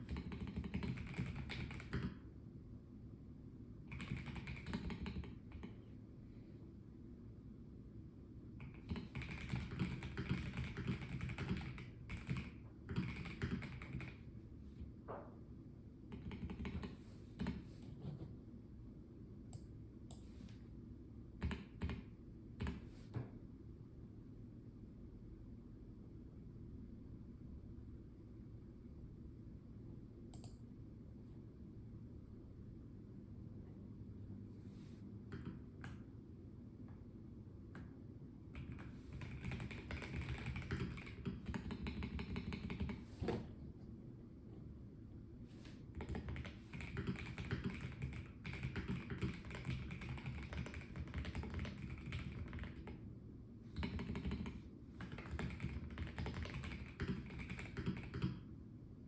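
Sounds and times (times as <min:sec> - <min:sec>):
typing on mechanical keyboard: 0:00.0 - 0:02.2, 0:03.9 - 0:05.8, 0:08.6 - 0:14.2, 0:16.1 - 0:17.6, 0:21.4 - 0:22.8, 0:38.5 - 0:43.1, 0:46.0 - 0:53.0, 0:53.8 - 0:58.4.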